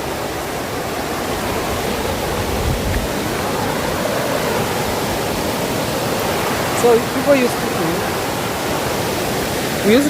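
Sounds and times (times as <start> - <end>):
waterfall rushing: 0.0 - 10.0.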